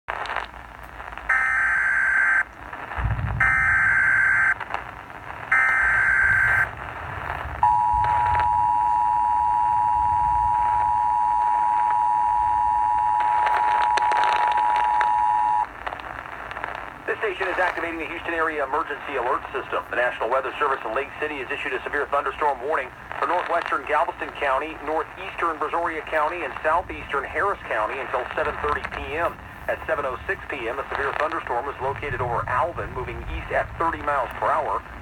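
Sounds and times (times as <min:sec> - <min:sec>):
radio static: 0:00.0 - 0:35.0
digital data bursts: 0:03.0 - 0:04.6, 0:05.4 - 0:06.8
two-tone attention signal: 0:03.4 - 0:04.6, 0:07.6 - 0:15.7.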